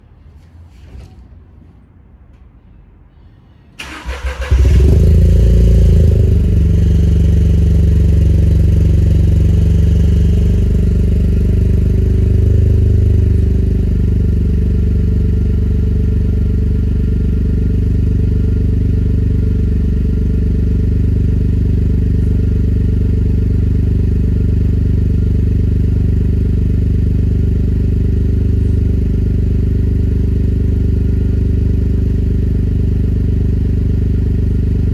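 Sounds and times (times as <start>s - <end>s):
engine starting and idling: 3.8s - 20.4s.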